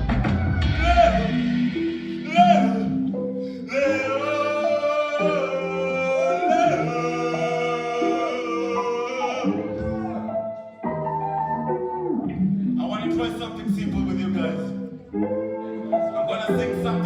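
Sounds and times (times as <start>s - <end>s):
man singing wavering notes: 0.6s - 10.4s.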